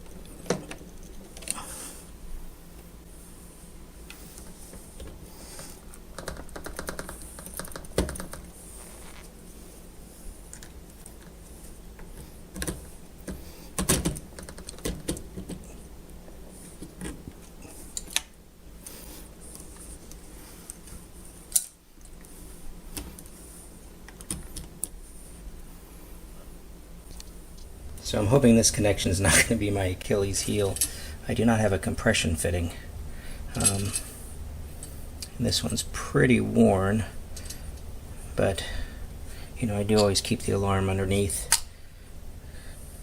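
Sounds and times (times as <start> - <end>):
steady low hum: 0.0 - 43.0
rapid ticks: 5.9 - 8.5.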